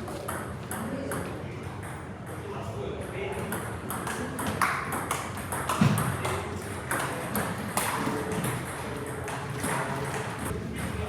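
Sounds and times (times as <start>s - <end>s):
table tennis balls clicking: 3.6s - 10.5s.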